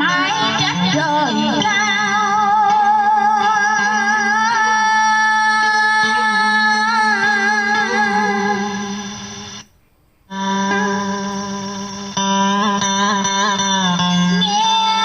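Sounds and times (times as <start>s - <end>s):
long held sung note with vibrato: 10.3s - 15.0s.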